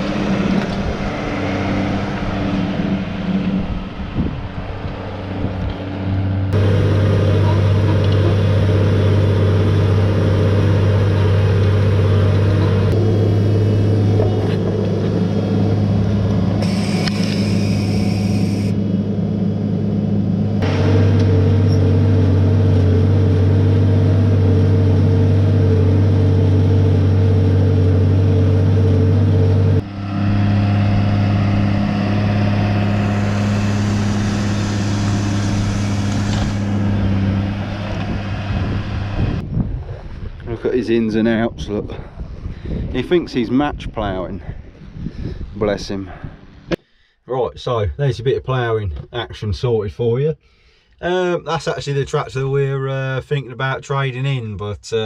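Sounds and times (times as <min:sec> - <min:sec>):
tractor diesel engine under load: 0:00.0 - 0:39.4.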